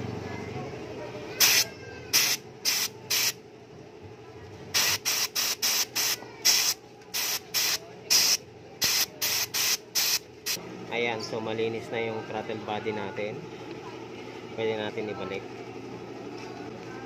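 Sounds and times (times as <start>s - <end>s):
pressurised spray hissing: 1.4s - 3.4s, 4.8s - 10.6s.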